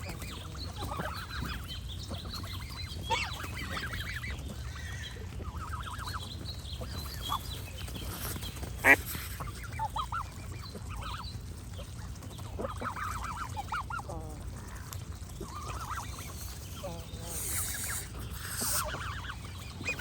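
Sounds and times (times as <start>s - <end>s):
geese honking: 12.6s - 20.0s.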